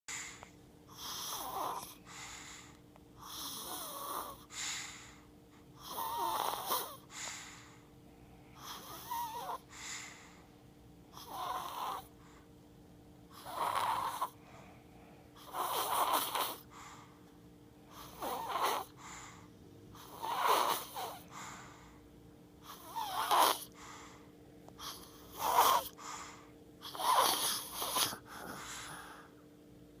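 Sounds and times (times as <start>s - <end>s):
person snoring: 0.3s - 2.1s, 3.2s - 4.5s, 5.8s - 7.1s, 8.6s - 9.7s, 11.1s - 12.2s, 13.3s - 14.4s, 15.4s - 16.7s, 17.9s - 19.0s, 20.0s - 21.3s, 22.7s - 23.8s, 24.8s - 26.0s, 26.8s - 29.4s.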